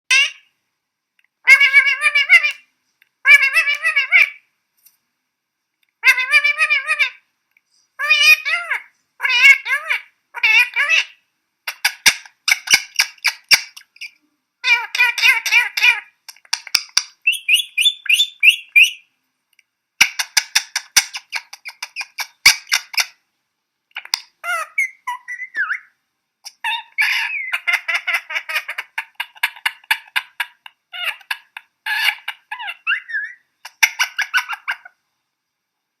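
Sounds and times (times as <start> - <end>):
bird chattering squawks: 17.2 - 19.0.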